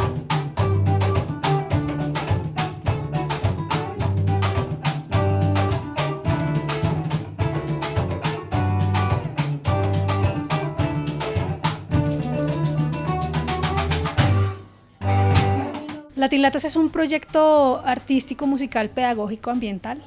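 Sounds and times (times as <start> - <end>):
bass line: 0.0 - 15.9
plucked strings: 0.0 - 16.2
drum and percussion beat: 0.0 - 19.8.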